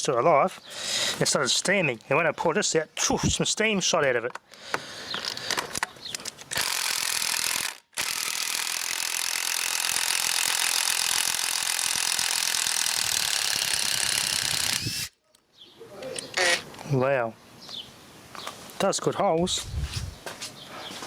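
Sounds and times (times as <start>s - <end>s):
cordless driver spinning into wood: 6.5s - 15.2s.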